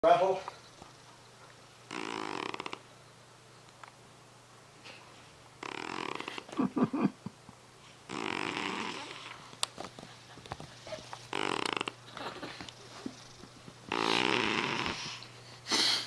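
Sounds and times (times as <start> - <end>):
cat snoring: 1.9 - 2.8, 5.6 - 6.5, 8.1 - 9.4, 11.3 - 12.0, 13.9 - 15.2.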